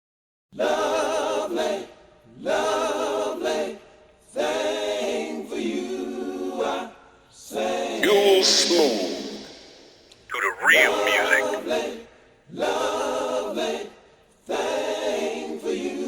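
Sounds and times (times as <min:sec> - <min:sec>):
vocal group singing a cappella: 0:00.6 - 0:06.9, 0:07.5 - 0:11.8, 0:12.6 - 0:16.0.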